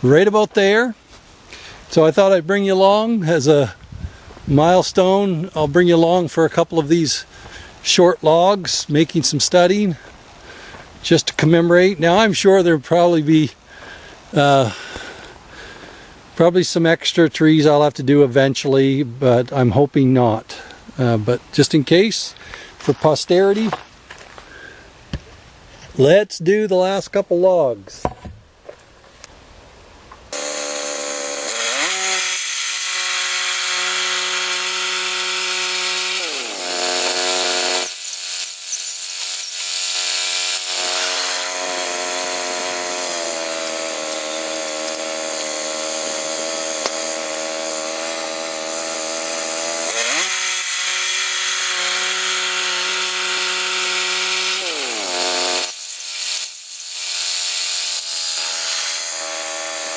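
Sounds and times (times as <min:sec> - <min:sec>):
sawmill engine cutting log: 0:30.3 - 0:59.9.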